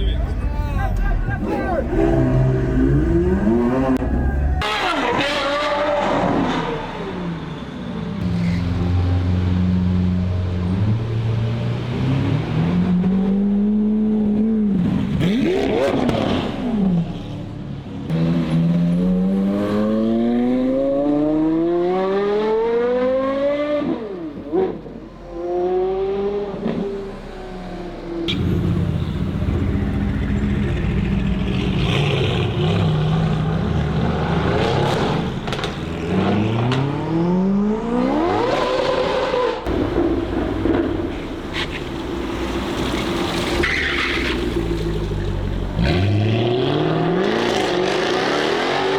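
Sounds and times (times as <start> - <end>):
car engine accelerating hard: 18.1 - 48.9.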